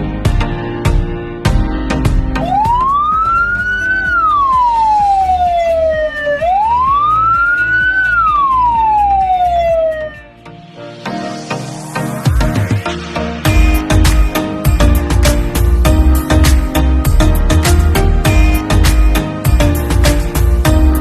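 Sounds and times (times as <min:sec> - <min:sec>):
background music with a beat: 0:00.0 - 0:21.0
ambulance siren wailing: 0:02.4 - 0:10.4.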